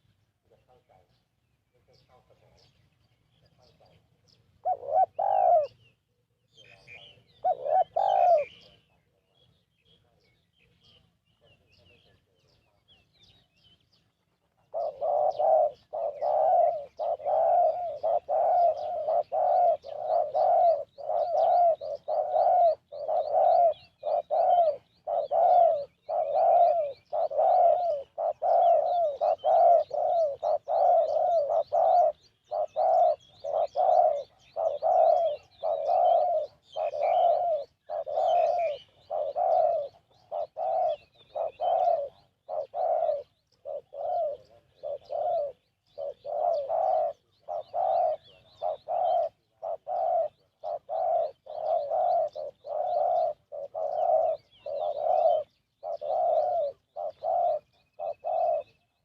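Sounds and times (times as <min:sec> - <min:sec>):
dove cooing: 0:00.0 - 0:02.8, 0:03.4 - 0:59.0
small bird chirping faintly: 0:00.0 - 0:59.0.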